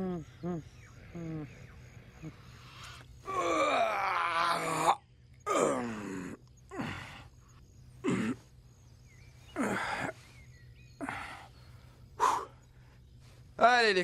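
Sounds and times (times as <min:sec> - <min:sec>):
person sighing or groaning: 0:03.2 - 0:07.2.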